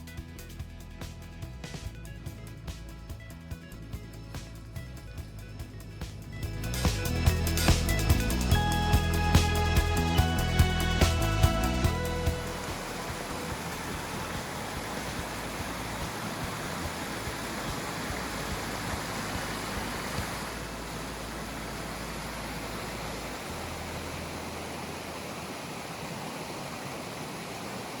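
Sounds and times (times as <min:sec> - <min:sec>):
stream water rushing: 0:06.7 - 0:28.0.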